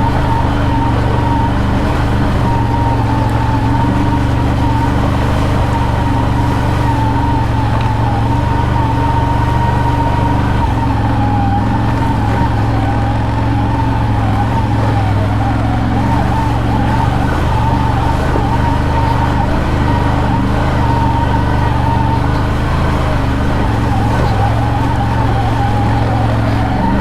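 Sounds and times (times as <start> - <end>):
atv engine humming: 0.0 - 27.0
high wavering whine: 0.0 - 27.0.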